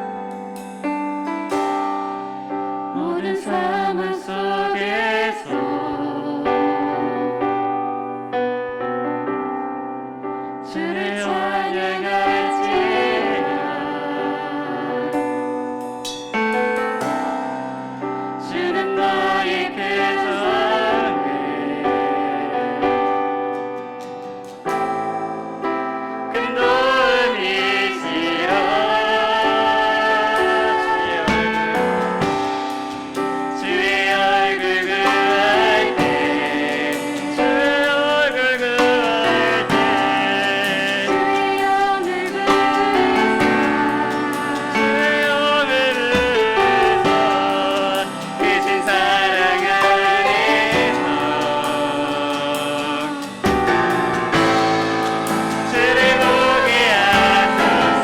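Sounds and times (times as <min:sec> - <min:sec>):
drums: 0:00.0 - 0:03.0, 0:29.6 - 0:58.0
voices singing praise song: 0:00.0 - 0:08.5, 0:10.3 - 0:58.0
piano: 0:00.0 - 0:58.0.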